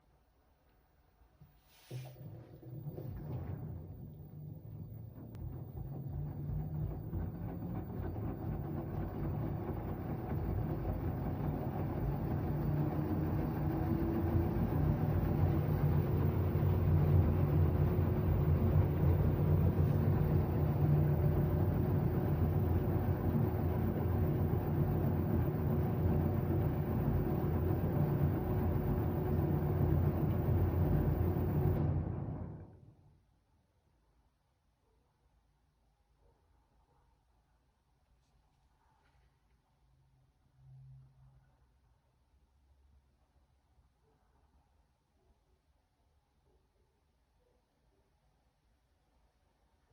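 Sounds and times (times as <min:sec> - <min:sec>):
washing machine drum spinning: 0:01.9 - 0:33.0.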